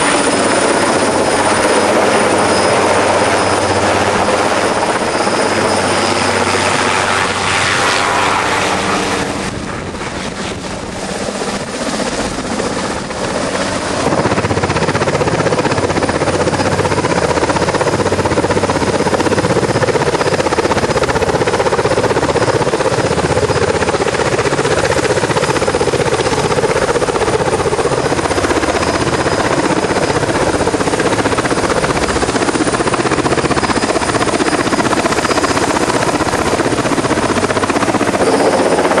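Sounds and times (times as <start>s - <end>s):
turbine noise: 0.0s - 20.9s
helicopter rotor beat: 0.0s - 39.0s.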